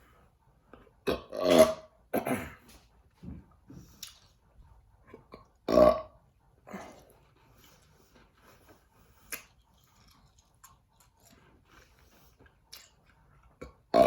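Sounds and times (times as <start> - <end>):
person burping: 1.0 - 2.6, 5.7 - 6.1
chewing candy crunches: 9.2 - 13.9.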